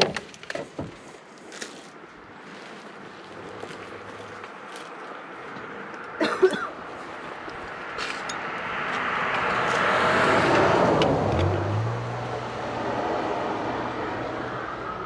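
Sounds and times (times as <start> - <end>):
vehicle passing by: 7.0 - 15.0.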